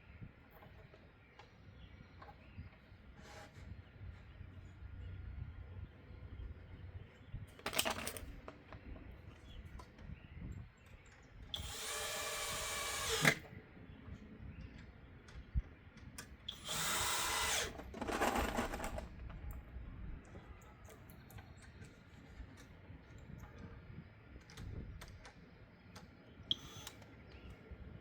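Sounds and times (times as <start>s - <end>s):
power drill driving screws: 11.6s - 13.5s, 16.5s - 19.0s, 26.5s - 27.0s.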